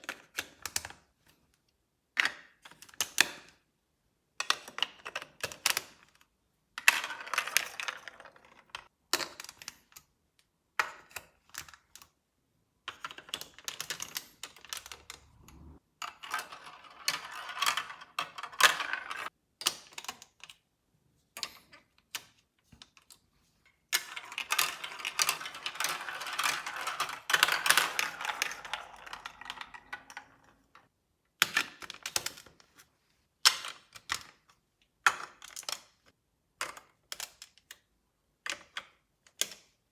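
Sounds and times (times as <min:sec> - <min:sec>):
marbles rattling through marble run: 0:24.0 - 0:30.8.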